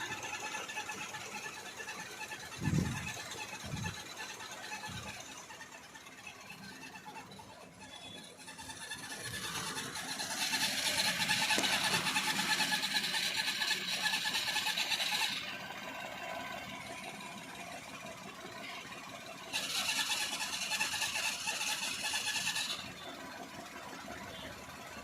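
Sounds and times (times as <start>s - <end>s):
car engine idling: 0.0s - 25.0s
high-pitched squealing whir: 0.0s - 25.0s.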